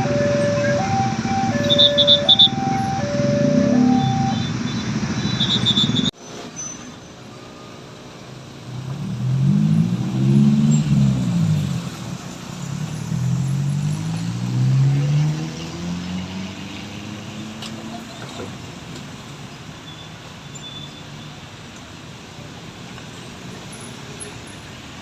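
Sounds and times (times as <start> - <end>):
musical bus horn: 0.0 - 6.0
bus diesel engine pulling away: 0.0 - 21.5
road noise: 0.0 - 25.0.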